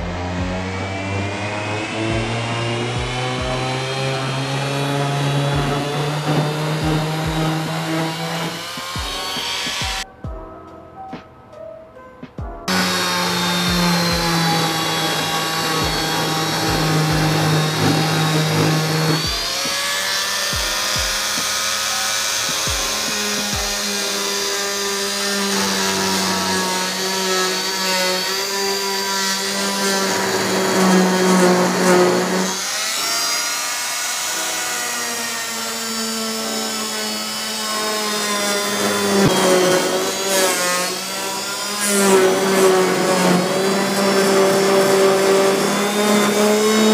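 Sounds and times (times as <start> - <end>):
oscillating multi-tool buzzing: 12.7 - 46.9.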